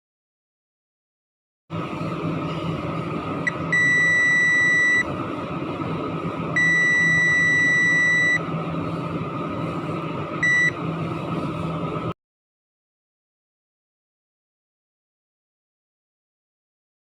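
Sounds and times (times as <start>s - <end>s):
multimeter continuity beeps: 3.4s - 5.1s, 6.6s - 8.5s, 10.4s - 10.8s.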